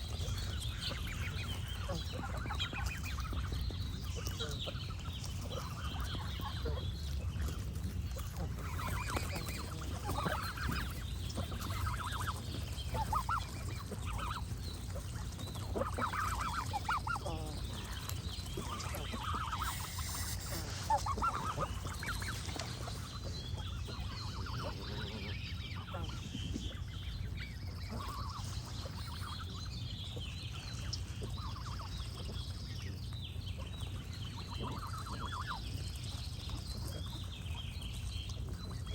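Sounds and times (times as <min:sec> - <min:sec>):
small birds chirping: 0:00.0 - 0:38.9
geese honking: 0:07.6 - 0:26.8.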